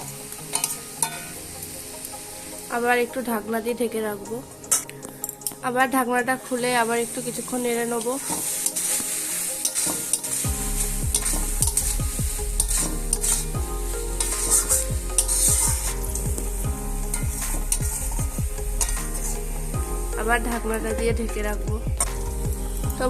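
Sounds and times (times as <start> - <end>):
oil sizzling: 0.0 - 23.0
spatula scraping a pan: 7.3 - 18.2, 18.8 - 19.5.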